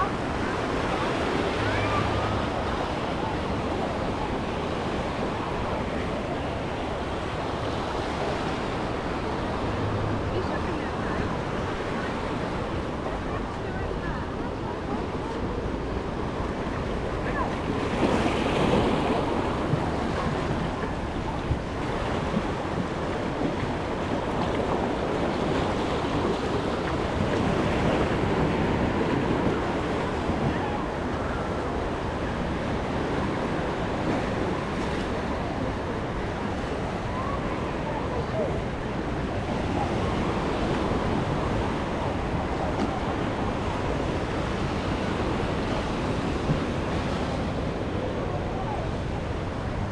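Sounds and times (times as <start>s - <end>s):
small waves washing onto beach: 0.0s - 49.9s
wind buffeting microphone: 0.0s - 49.9s.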